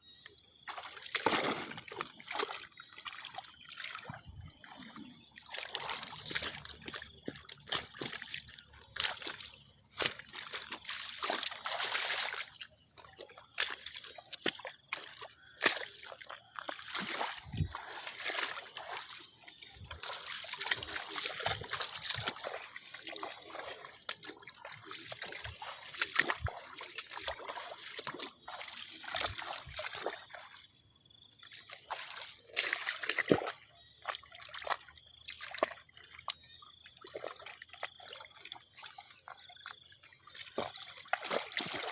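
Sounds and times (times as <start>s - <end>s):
floodwater trickling and splashing: 0.0s - 41.9s.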